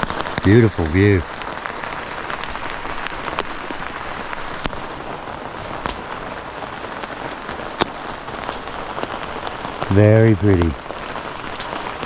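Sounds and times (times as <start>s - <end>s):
rain pattering on a tent: 0.0s - 12.0s.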